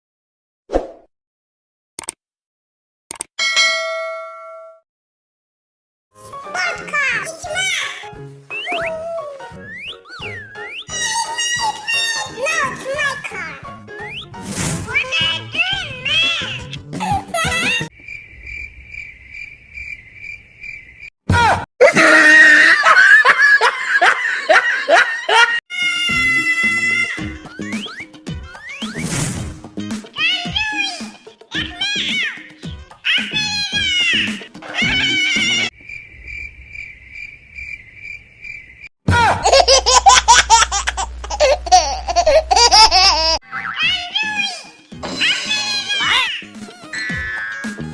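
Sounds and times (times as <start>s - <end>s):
steady chirping: 8.5s - 11.4s, 13.9s - 14.4s, 17.9s - 21.1s, 35.8s - 38.9s
high-pitched laughter: 16.5s - 17.9s, 21.8s - 27.2s, 39.1s - 44.0s, 46.0s - 47.9s.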